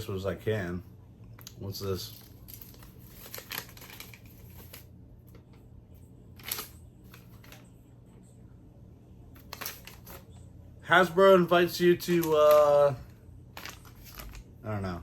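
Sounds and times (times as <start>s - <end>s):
cardboard and paper rustling: 1.9s - 4.9s, 6.4s - 7.7s, 9.4s - 10.4s, 12.0s - 14.5s.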